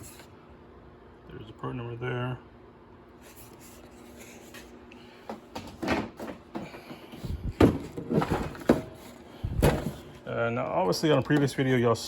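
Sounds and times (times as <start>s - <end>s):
heavy thumps: 9.5s - 10.1s.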